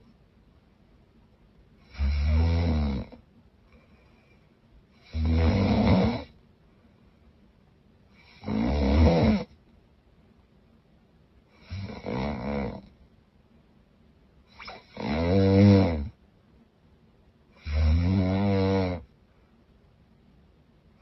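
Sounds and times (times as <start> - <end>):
woman snoring loudly: 1.9 - 3.1, 5.0 - 6.3, 8.2 - 9.5, 11.6 - 12.8, 14.6 - 16.1, 17.6 - 19.0
quiet breathing: 3.0 - 5.3, 6.1 - 8.5, 19.0 - 19.9.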